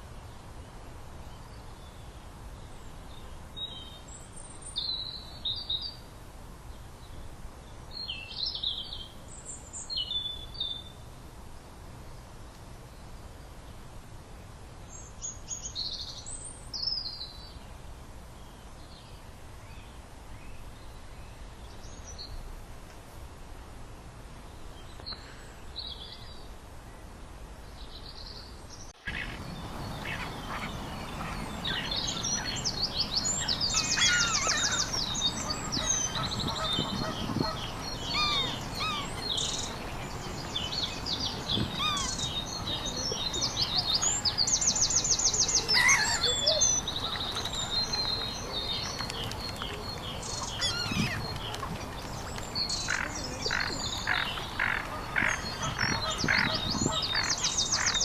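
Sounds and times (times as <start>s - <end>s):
birds calling and trilling: 28.2s - 58.0s.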